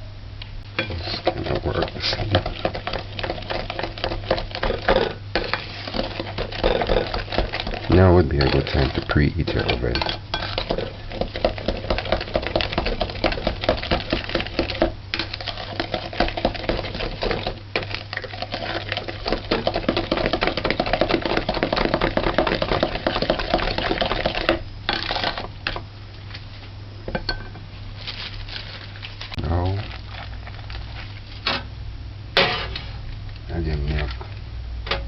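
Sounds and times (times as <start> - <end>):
steady low hum: 0.0 - 35.0
spoon beating batter in bowl: 0.8 - 24.6.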